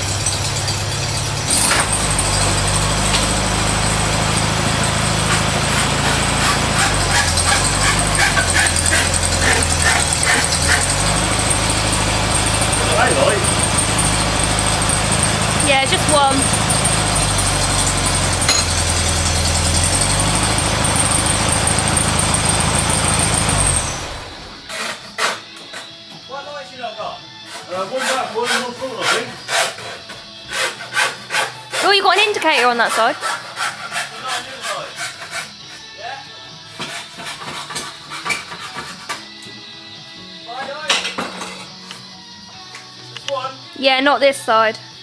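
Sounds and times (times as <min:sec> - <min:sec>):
car engine idling: 0:00.0 - 0:24.7.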